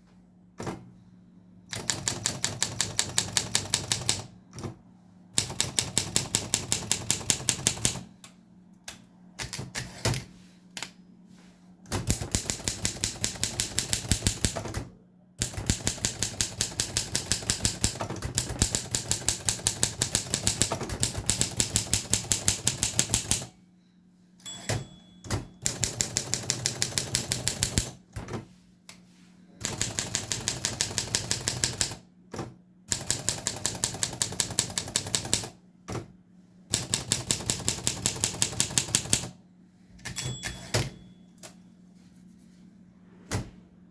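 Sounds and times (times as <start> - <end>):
typewriter key strikes: 11.9 - 14.8, 15.4 - 23.4, 24.5 - 27.9, 40.0 - 41.1.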